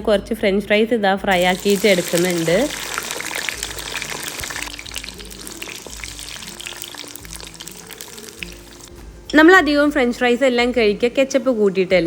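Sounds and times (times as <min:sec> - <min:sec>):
faint background music: 0:00.0 - 0:12.0
fries sizzling in hot oil: 0:01.3 - 0:09.0.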